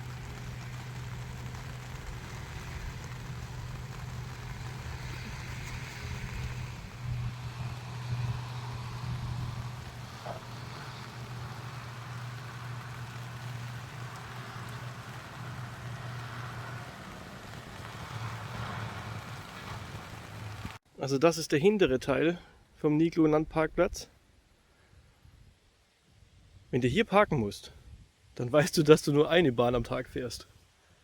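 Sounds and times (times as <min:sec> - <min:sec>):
road noise: 0:00.0 - 0:20.8
vehicle engine humming: 0:00.0 - 0:20.8.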